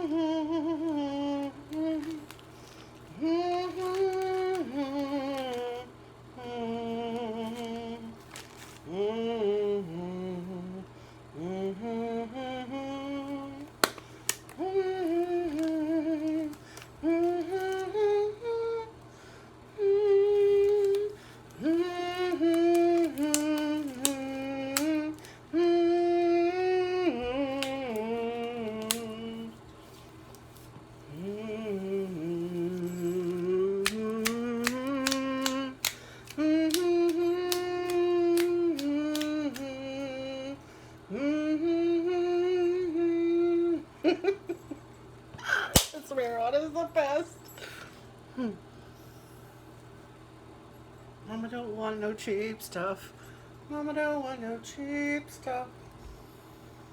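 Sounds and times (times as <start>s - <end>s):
woman humming: 0.0s - 2.4s, 3.1s - 13.8s, 14.5s - 19.0s, 19.7s - 29.6s, 31.0s - 44.8s, 48.3s - 48.7s.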